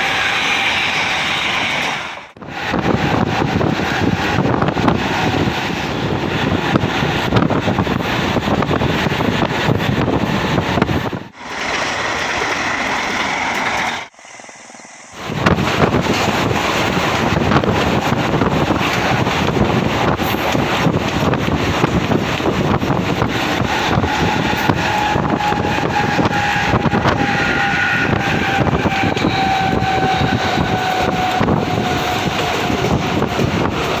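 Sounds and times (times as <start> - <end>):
train rumbling and rattling: 0.0 - 34.0
wind buffeting microphone: 2.3 - 13.2, 14.0 - 34.0
high whine: 11.3 - 17.8.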